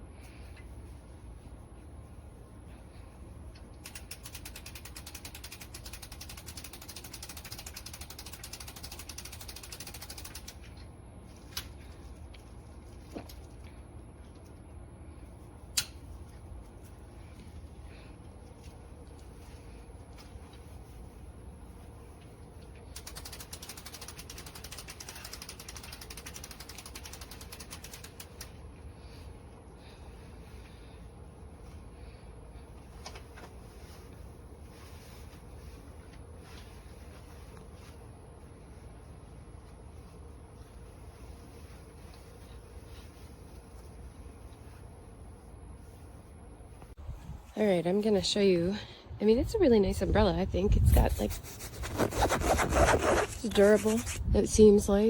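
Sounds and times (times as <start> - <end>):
umbrella crank ratcheting: 3.6 - 10.6, 22.9 - 28.6.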